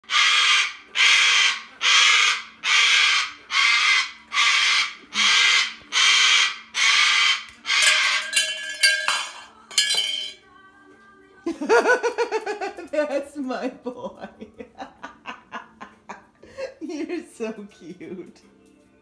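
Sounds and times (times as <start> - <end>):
cockatoo screeching: 0.1 - 8.4
clinking: 7.8 - 10.4.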